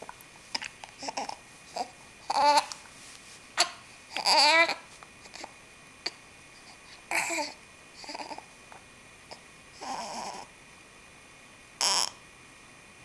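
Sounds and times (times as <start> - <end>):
baby babbling: 0.6 - 2.8, 3.6 - 6.2, 7.1 - 8.5, 9.8 - 10.5
baby hiccuping: 7.1 - 8.4.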